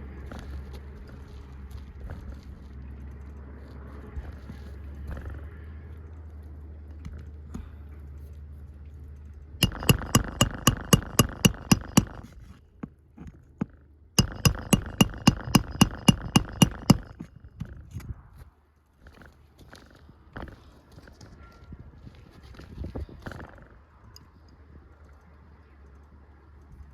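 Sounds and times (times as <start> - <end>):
hammer striking metal: 9.6 - 12.3, 14.2 - 17.2.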